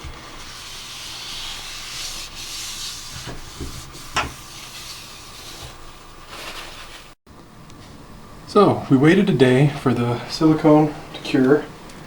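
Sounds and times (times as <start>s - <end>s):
rubbing and scuffing on surface: 0.3s - 7.2s.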